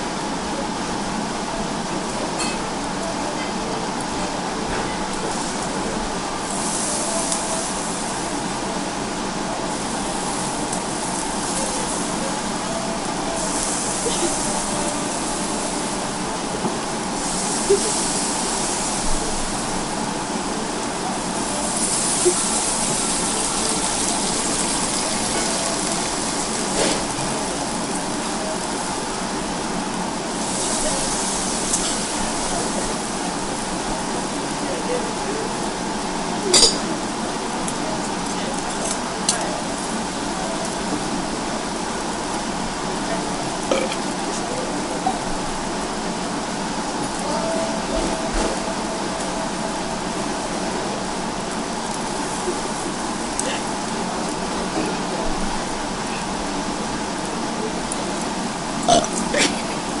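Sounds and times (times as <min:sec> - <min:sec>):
diners chatting: 0:00.0 - 1:00.0
meat sizzling on grill: 0:06.5 - 0:08.5, 0:09.6 - 0:29.4, 0:30.2 - 0:34.4.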